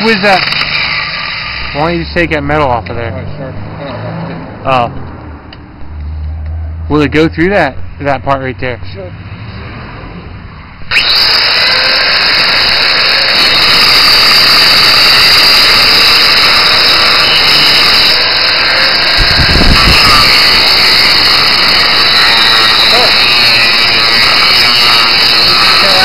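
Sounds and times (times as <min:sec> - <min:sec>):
angle grinder cutting metal: 0:00.0 - 0:04.4, 0:10.8 - 0:26.0.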